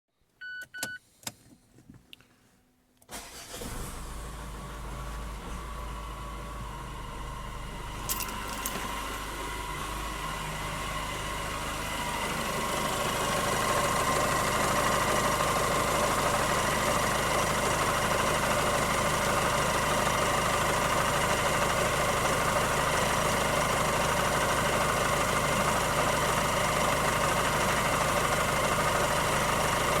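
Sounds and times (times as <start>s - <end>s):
diesel engine idling roughly: 9.2s - 30.0s.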